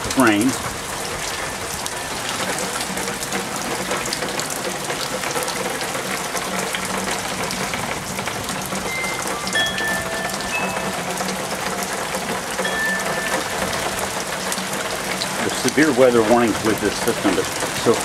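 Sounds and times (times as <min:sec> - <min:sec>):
rain falling: 0:00.0 - 0:18.0
water splashing off eaves: 0:13.5 - 0:18.0.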